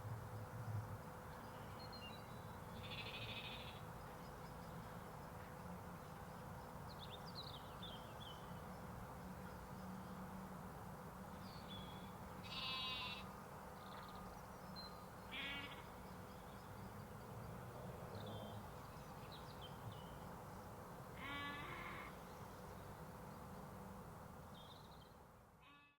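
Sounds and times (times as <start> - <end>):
sheep and lambs bleating: 2.8 - 3.8, 12.4 - 13.3, 15.3 - 15.9, 21.2 - 22.2, 25.6 - 26.0.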